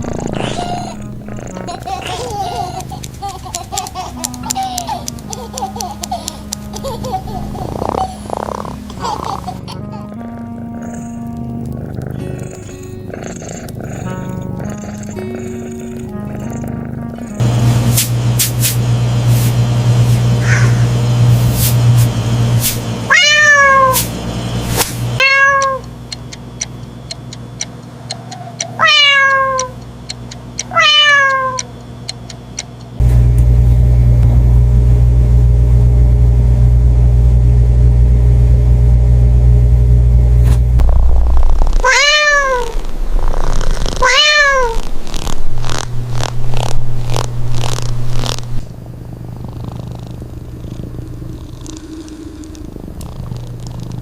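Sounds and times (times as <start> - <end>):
cat meowing: 0.0 - 3.1, 7.4 - 17.4, 20.4 - 20.8, 23.1 - 24.1, 25.2 - 25.9, 28.1 - 29.8, 30.7 - 31.7, 41.0 - 45.8
loud low hum: 17.3 - 25.2, 32.8 - 49.4.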